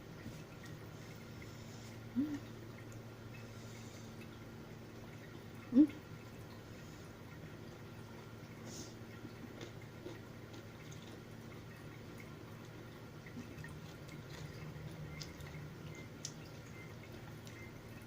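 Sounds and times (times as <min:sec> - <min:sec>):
steady low hum: 0:00.0 - 0:18.0
person chewing noodles: 0:09.2 - 0:11.9, 0:13.3 - 0:17.7.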